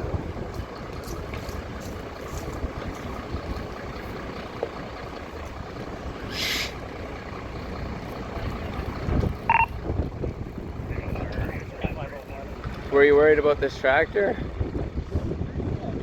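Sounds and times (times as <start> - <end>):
wind buffeting microphone: 0.0 - 6.2, 8.2 - 16.0
electronic beep: 9.5 - 9.8.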